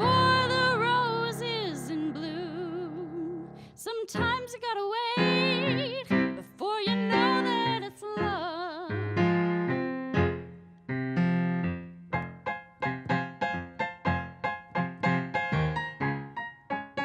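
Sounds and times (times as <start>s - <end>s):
person singing with vibrato: 0.0s - 9.0s
keyboard playing tango chords: 9.0s - 17.0s.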